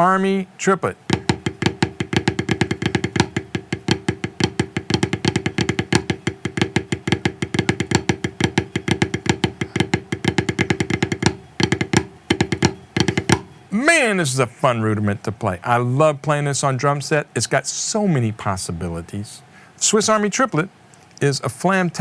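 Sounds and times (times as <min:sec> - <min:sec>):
snare drum played with sticks: 0:01.1 - 0:14.1.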